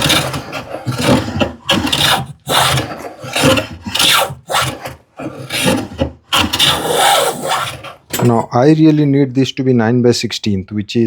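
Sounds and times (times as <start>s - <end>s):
hand tool rasping on wood: 0.0s - 8.5s.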